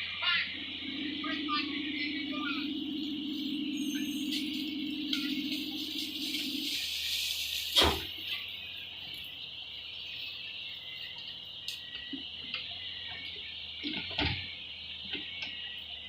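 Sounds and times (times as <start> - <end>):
faint low hum: 0.2 - 7.0
insects chirring: 0.2 - 16.0.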